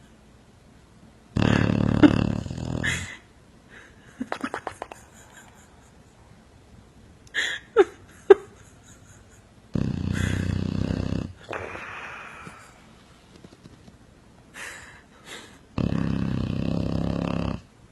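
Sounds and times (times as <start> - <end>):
loud buzzing snores: 1.3 - 3.1, 9.7 - 12.5, 15.8 - 17.7
breath out: 11.5 - 12.8.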